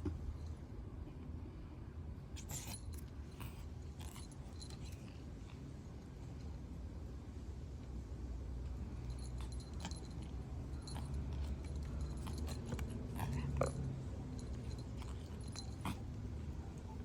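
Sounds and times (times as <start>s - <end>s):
low steady rumble: 0.0s - 17.0s
faint metallic jingles: 8.8s - 17.0s.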